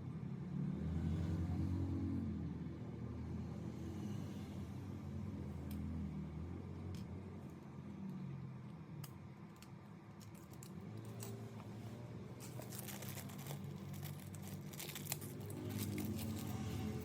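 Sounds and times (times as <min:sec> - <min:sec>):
low steady hum: 0:05.2 - 0:17.0
small parts clicking and rattling: 0:09.0 - 0:11.8, 0:12.4 - 0:17.0.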